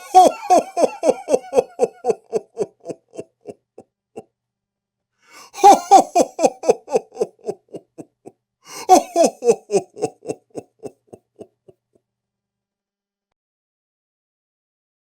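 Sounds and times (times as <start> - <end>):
deep ho ho ho laugh: 0.0 - 3.8, 5.4 - 11.7.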